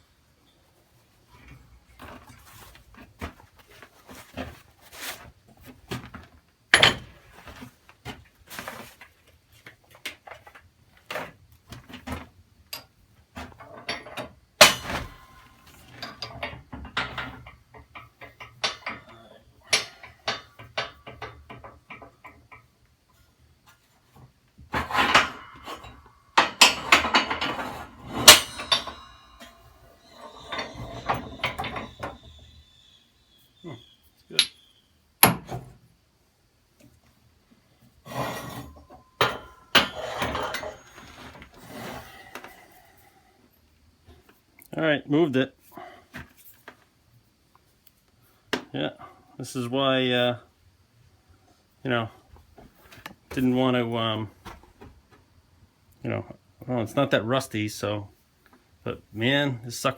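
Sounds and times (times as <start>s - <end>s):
metal parts clanking: 6.8s - 7.4s, 12.7s - 22.3s, 24.7s - 33.0s, 38.1s - 42.0s.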